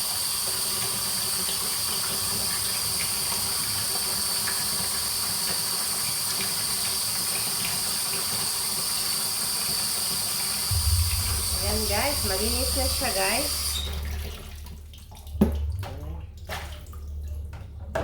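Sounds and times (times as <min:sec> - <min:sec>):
tap water running into sink: 0:00.0 - 0:18.0
faint knocks and splashes: 0:10.7 - 0:18.0.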